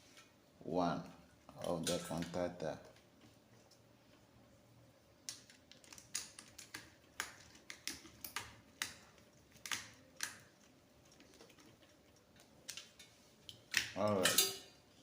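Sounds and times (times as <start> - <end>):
clicks and taps of wiring work: 5.2 - 11.7, 12.4 - 14.5.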